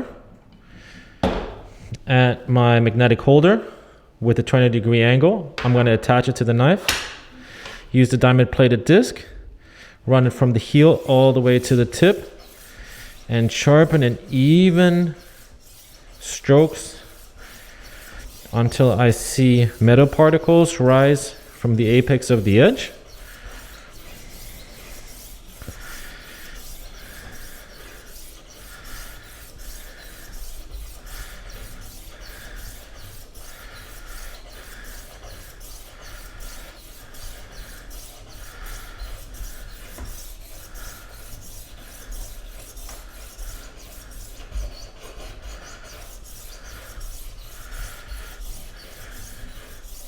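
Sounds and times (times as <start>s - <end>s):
knife sharpener rasping: 10.8s - 50.0s.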